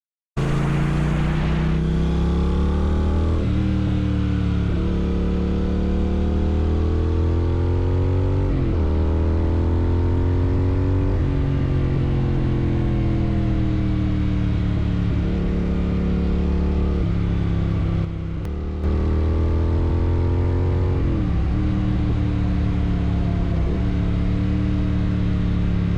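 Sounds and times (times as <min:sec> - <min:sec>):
loud motorcycle engine revving: 0:00.4 - 0:25.9.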